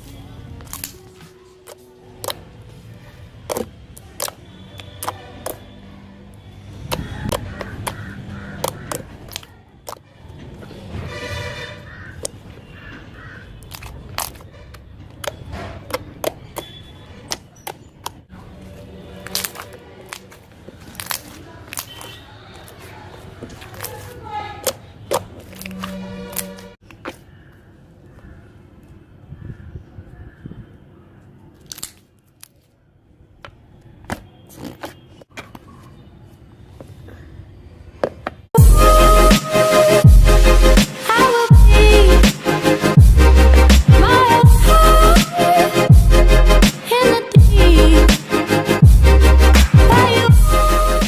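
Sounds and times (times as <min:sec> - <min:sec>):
slime crackling and popping: 0:03.5 - 0:05.6, 0:19.2 - 0:22.8, 0:31.6 - 0:32.6
slime popping and clicking: 0:03.5 - 0:05.6
slime squeak: 0:13.6 - 0:18.2.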